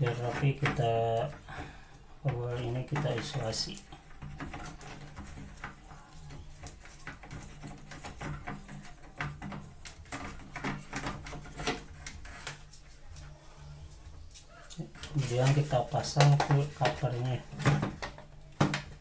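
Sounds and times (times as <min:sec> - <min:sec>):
insulating tape crackling: 0:00.0 - 0:19.0.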